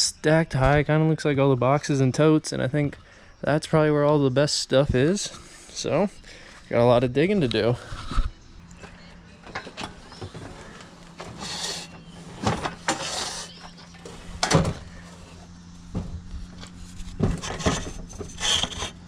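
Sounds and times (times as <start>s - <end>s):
steady low hum: 0.0s - 19.0s
belongings knocking and scraping: 7.2s - 19.0s.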